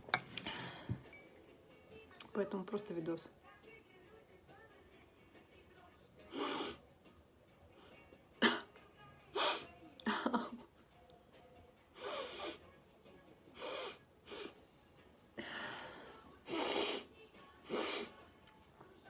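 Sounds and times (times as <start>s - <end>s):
sniffs and breaths: 0.2s - 1.1s, 6.3s - 6.8s, 12.0s - 12.7s, 13.5s - 14.6s, 15.4s - 18.2s.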